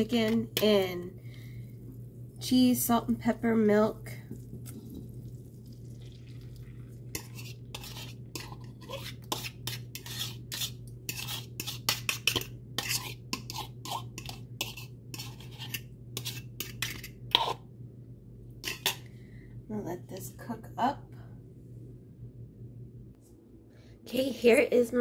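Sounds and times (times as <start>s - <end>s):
steady low hum: 0.0s - 25.0s
utensil scraping a dish: 7.1s - 17.6s, 18.6s - 19.0s.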